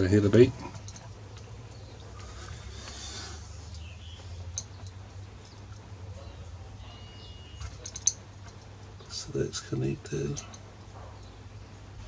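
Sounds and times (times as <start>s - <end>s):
multimeter beep: 6.9s - 7.7s
light clicks: 10.3s - 11.3s.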